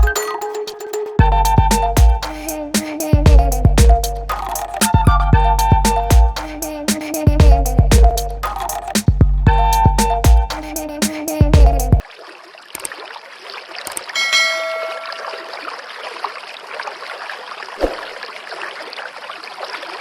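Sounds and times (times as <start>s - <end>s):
music with a beat: 0.0s - 12.0s
bell-like ding: 14.2s - 15.5s.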